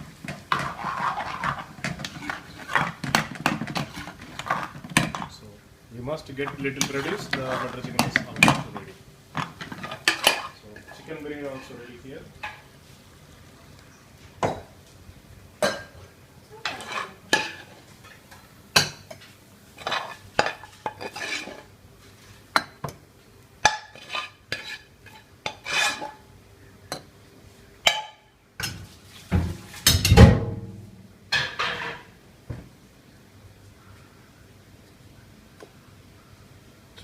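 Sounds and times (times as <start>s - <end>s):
metal spoon scraping cooking pots: 0.2s - 5.4s, 6.3s - 12.7s, 16.6s - 21.7s, 23.6s - 26.2s.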